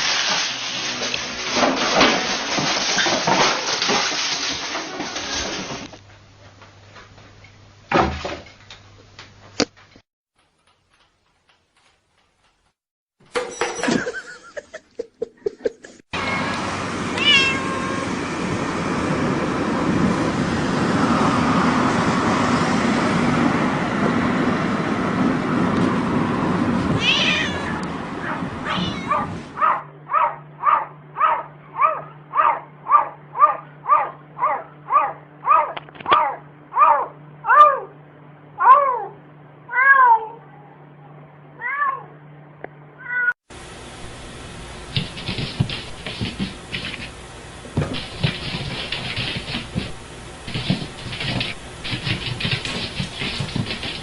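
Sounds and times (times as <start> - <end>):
cat meowing: 16.2 - 16.6, 17.2 - 18.1, 27.0 - 29.4, 38.6 - 40.6, 43.0 - 43.3.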